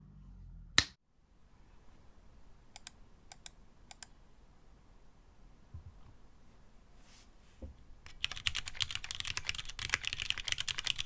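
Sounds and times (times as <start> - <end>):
keyboard key presses clacking: 8.1 - 11.0.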